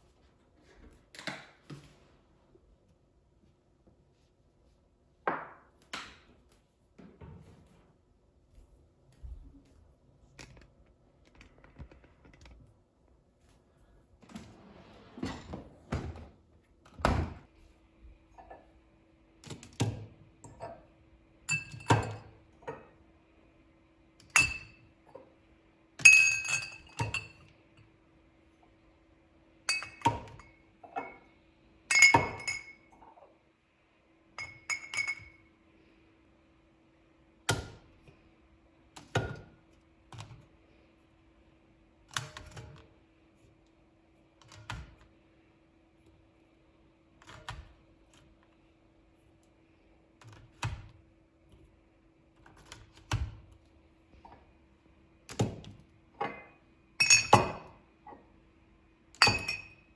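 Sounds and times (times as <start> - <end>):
dishes and glassware clinking: 21.5 - 22.9, 26.0 - 27.5, 29.7 - 31.3, 31.9 - 33.2, 34.4 - 35.4, 56.2 - 58.3, 59.2 - 59.9.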